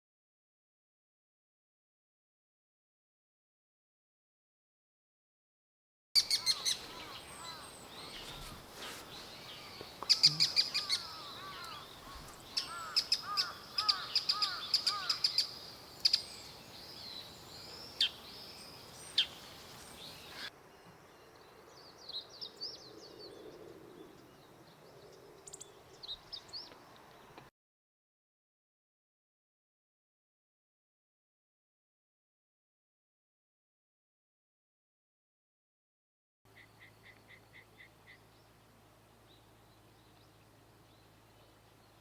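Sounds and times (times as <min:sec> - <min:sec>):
songbirds calling: 0:06.2 - 0:27.5, 0:36.5 - 0:42.0
higher bird chirps: 0:09.2 - 0:27.4.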